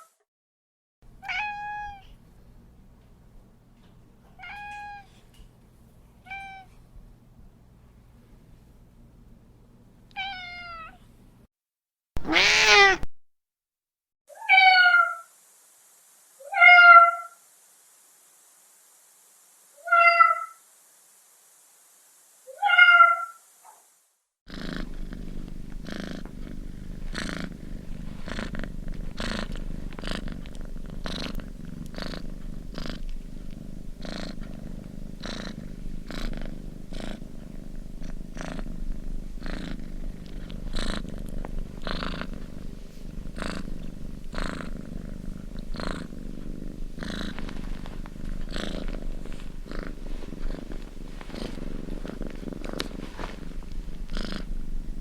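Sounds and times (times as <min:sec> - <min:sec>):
cat meowing: 0:01.2 - 0:02.1, 0:10.2 - 0:11.0, 0:12.2 - 0:13.1, 0:14.3 - 0:15.2, 0:19.8 - 0:20.6, 0:22.5 - 0:23.4
cat purring: 0:24.5 - 0:55.0.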